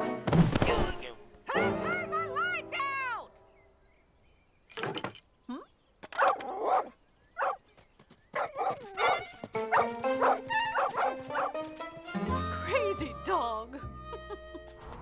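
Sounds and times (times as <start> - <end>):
background music: 0.0 - 3.1, 9.4 - 15.0
cartoon dog barking: 6.2 - 7.6, 8.4 - 11.5.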